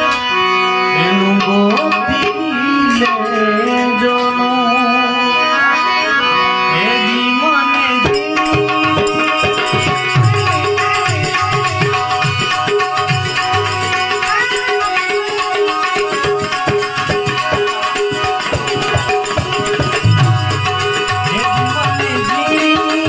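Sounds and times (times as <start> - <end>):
harmonium melody: 0.0 - 23.0
tabla strokes: 8.0 - 23.0.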